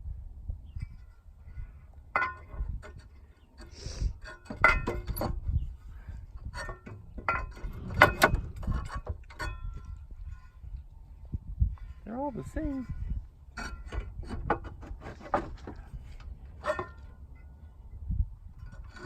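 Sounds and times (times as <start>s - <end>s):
metallic clinks and knocks: 4.3s - 5.5s.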